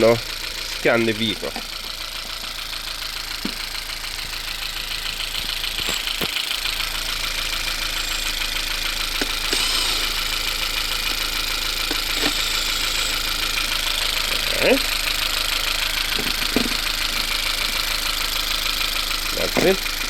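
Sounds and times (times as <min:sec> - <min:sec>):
car engine idling: 0:00.0 - 0:20.0.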